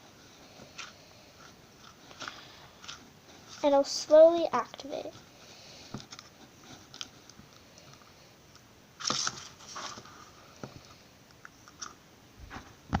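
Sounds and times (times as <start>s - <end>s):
slime stirred in a cup: 0.4s - 3.7s.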